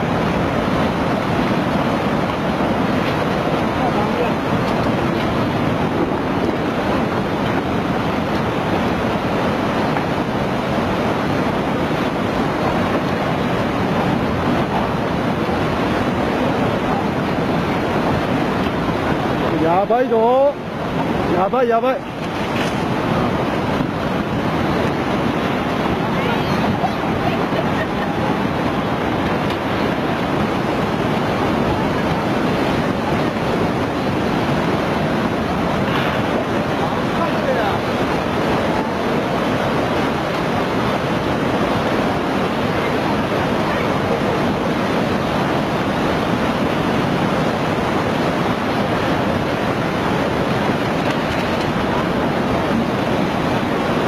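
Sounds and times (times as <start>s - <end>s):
floodwater rushing: 0.0s - 54.0s.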